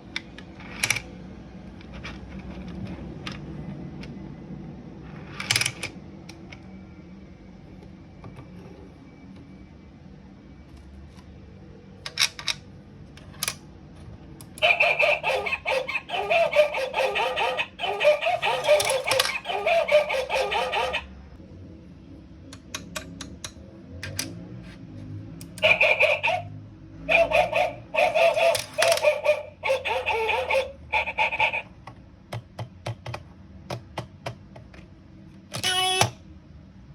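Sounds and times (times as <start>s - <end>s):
electronic chicken sound effect: 14.6s - 21.0s, 25.6s - 26.5s
plastic pieces clicking: 28.5s - 29.0s.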